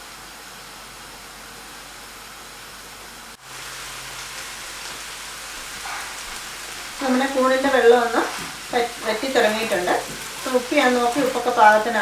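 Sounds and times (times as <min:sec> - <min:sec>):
mushrooms sizzling in a pan: 0:03.2 - 0:12.0.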